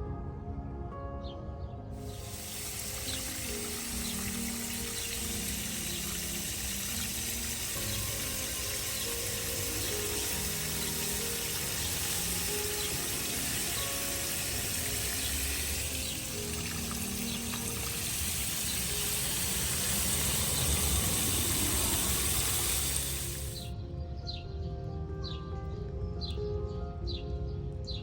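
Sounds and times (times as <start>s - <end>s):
soft background music: 0.0s - 28.0s
water running from a tap: 2.0s - 23.7s.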